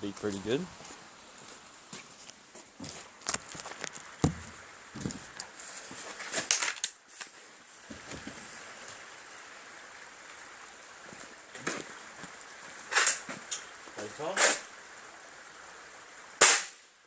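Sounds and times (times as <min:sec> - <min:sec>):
air rifle firing crack: 0:16.4 - 0:16.8.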